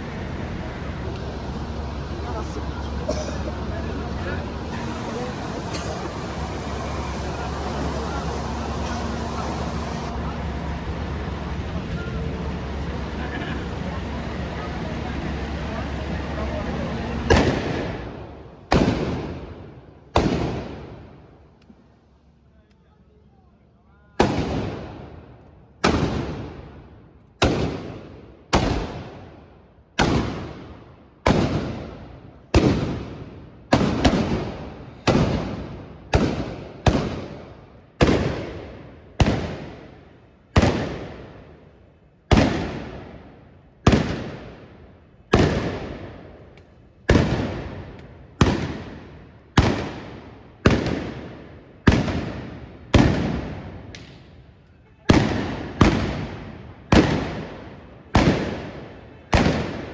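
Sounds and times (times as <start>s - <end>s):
loud gun blasts with echo: 17.2s - 21.1s, 24.2s - 25.2s, 25.8s - 26.8s, 27.4s - 29.3s, 30.0s - 41.5s, 42.3s - 44.7s, 45.3s - 46.3s, 47.0s - 53.9s, 55.1s - 59.9s.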